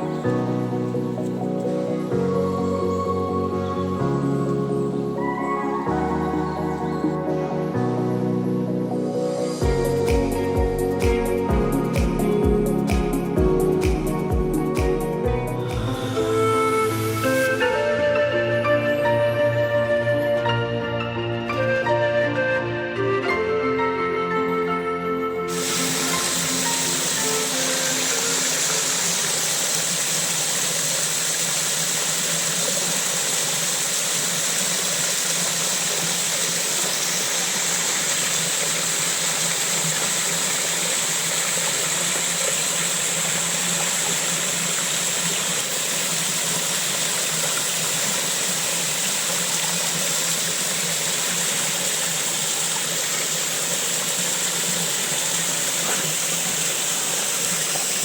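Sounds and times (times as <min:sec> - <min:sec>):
running water rushing: 0:00.0 - 0:08.3, 0:25.4 - 0:58.0.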